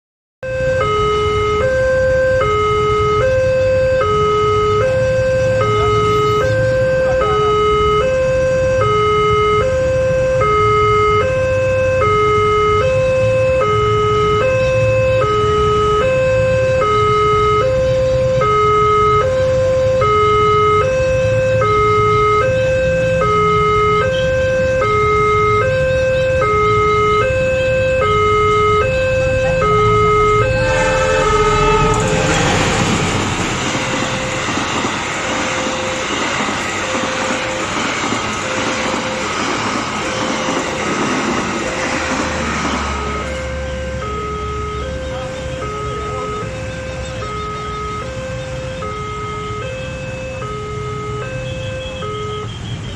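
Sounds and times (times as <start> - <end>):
two-tone crossing warning siren: 0.4 - 52.9
low steady rumble: 28.2 - 34.8.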